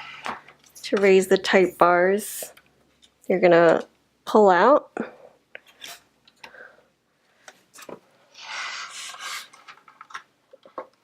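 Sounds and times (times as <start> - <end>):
scraping rub: 8.4 - 9.6.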